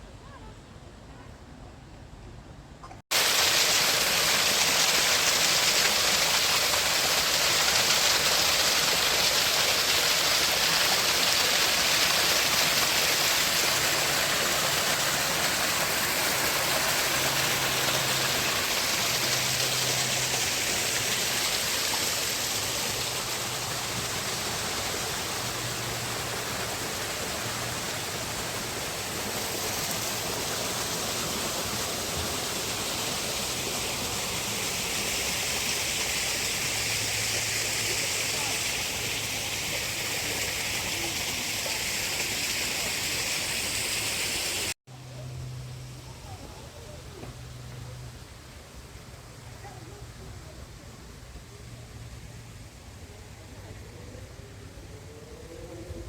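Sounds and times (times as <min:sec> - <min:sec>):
falling water rushing: 0:03.1 - 0:44.8.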